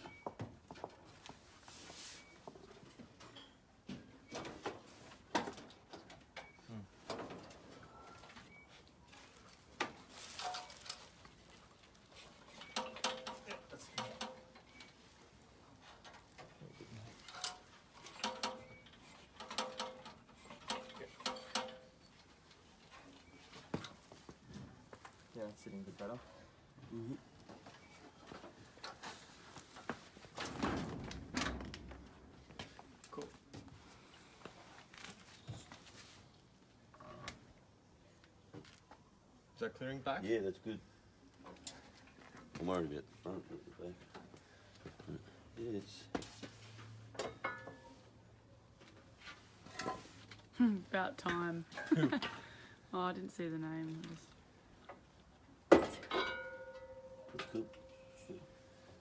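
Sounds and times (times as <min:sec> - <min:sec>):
metallic clinks and knocks: 0:12.4 - 0:15.0, 0:17.1 - 0:22.3, 0:47.2 - 0:48.0, 0:55.7 - 0:58.8.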